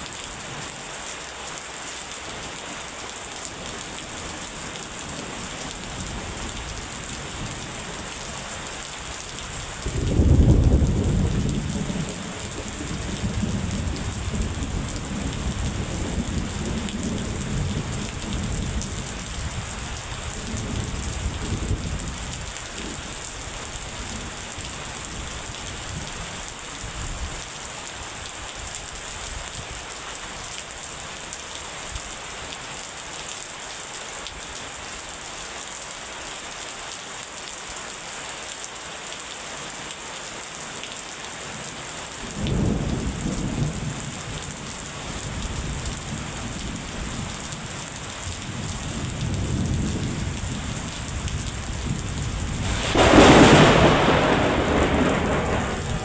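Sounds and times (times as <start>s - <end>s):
steady rain falling: 0.0s - 56.0s
rolling thunder: 9.8s - 19.6s, 20.3s - 23.0s, 48.6s - 56.0s.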